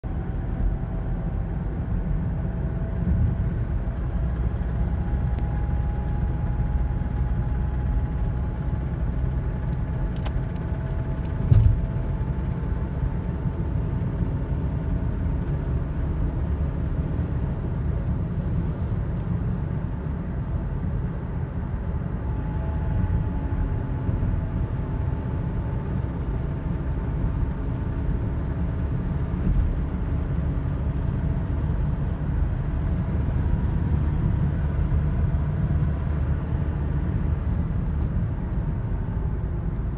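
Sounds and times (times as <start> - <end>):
car engine rumbling: 0.0 - 39.9
single thump: 11.5 - 12.0.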